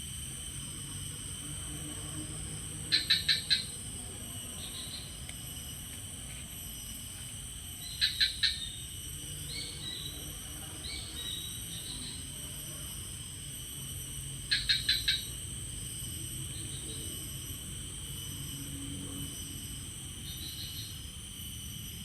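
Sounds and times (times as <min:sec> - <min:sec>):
insects droning: 0:00.0 - 0:22.0.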